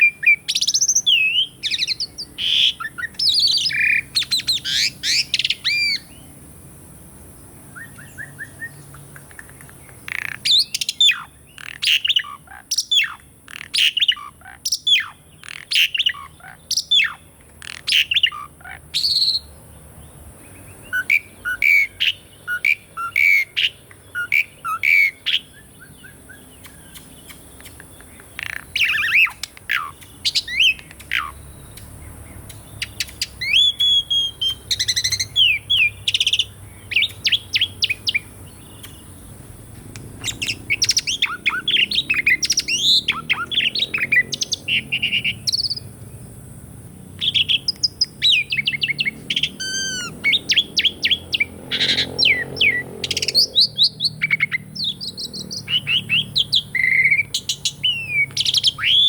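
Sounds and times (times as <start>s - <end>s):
starling chirps and whistles: 0.0s - 6.3s, 7.7s - 19.6s, 20.5s - 46.0s, 47.2s - 59.0s.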